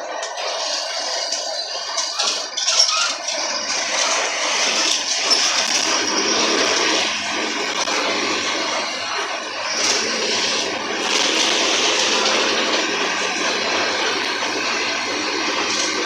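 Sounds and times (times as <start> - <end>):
road and cabin noise: 3.3 - 16.0
bus diesel engine drone: 3.7 - 16.0.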